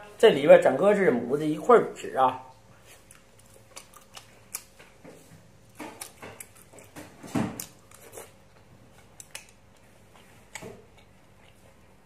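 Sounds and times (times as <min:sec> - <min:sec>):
person chewing squid: 0:02.6 - 0:12.0.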